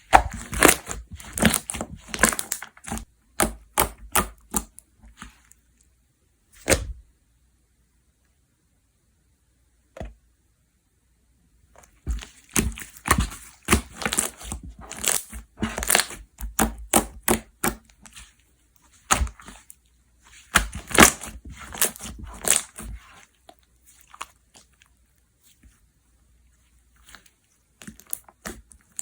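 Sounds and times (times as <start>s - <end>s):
slime crackling and popping: 0.0s - 4.8s, 12.0s - 18.3s, 20.3s - 24.8s.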